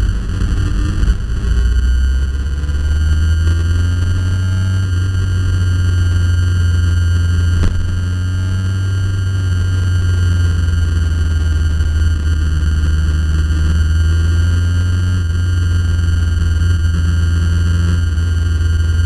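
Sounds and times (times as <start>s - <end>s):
heavy low rumble: 0.0s - 14.4s
electronic tones: 0.0s - 19.0s.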